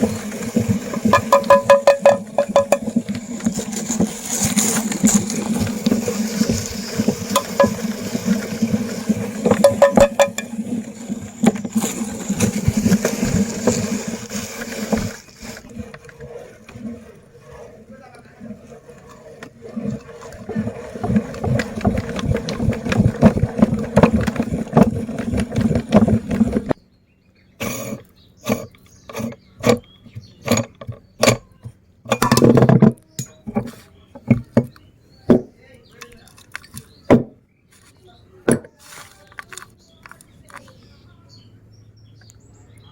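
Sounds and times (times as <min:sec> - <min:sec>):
meat grinder crunching cones: 0:00.0 - 0:15.8, 0:19.8 - 0:26.8.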